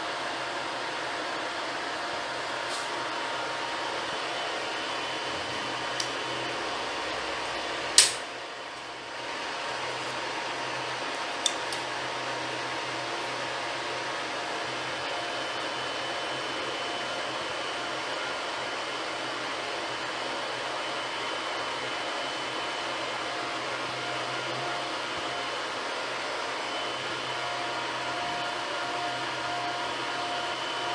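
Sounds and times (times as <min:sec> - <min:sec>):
whining motor tones: 0:08.8 - 0:30.9.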